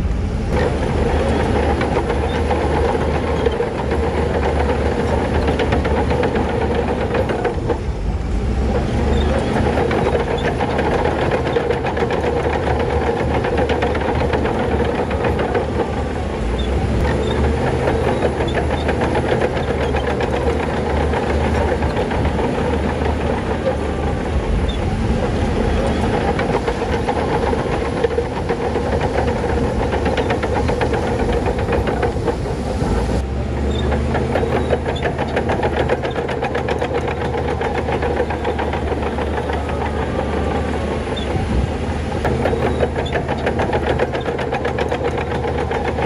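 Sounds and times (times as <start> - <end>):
bulldozer diesel engine running: 0.0 - 46.0
metal clatter: 8.7 - 46.0.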